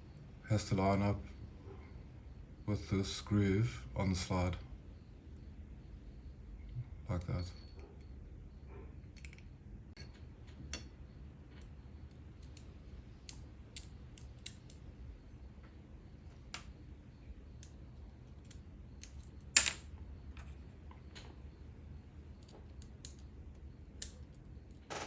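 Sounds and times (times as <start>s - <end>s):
small metal parts clicking: 11.6s - 14.8s, 17.6s - 20.6s, 22.4s - 24.9s.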